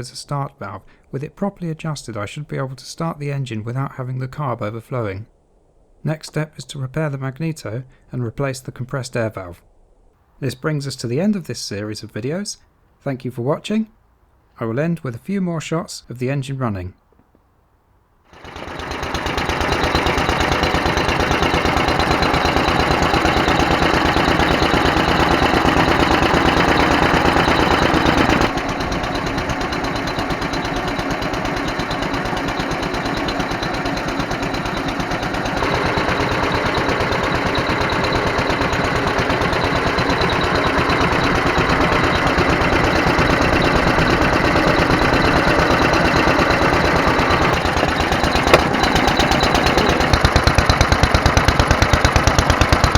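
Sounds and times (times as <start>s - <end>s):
stationary engine running: 18.3s - 52.9s.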